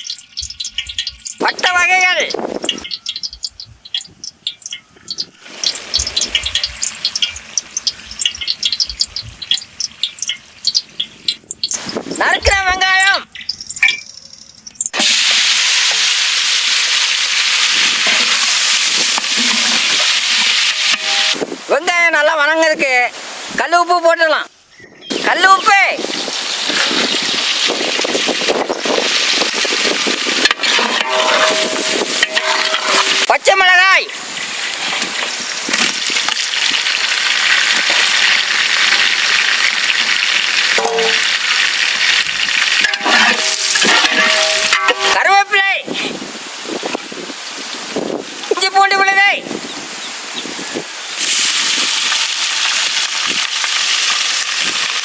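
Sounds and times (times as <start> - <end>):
onions sizzling in hot oil: 2.3 - 12.6, 14.4 - 21.6, 26.0 - 45.2, 49.6 - 55.0.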